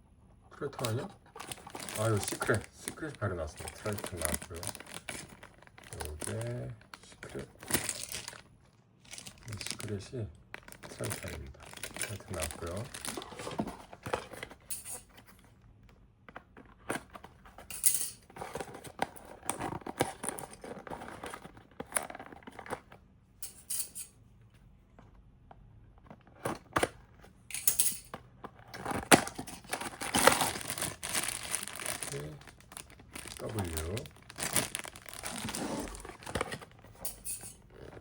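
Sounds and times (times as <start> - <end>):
paper and packaging crinkling: 0.6 - 15.4, 18.3 - 22.9, 28.5 - 37.0.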